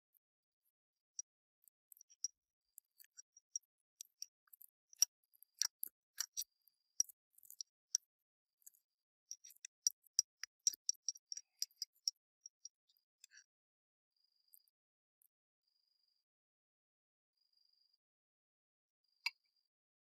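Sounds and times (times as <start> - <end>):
sharp clicks and ticks: 1.2 - 12.8.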